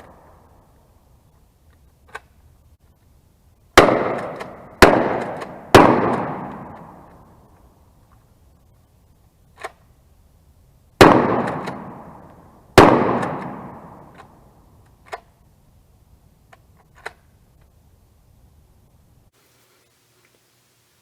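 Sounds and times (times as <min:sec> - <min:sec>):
shotgun shots with echo: 0:03.8 - 0:07.1, 0:11.0 - 0:14.2
sharp gun clicks: 0:04.0 - 0:06.9.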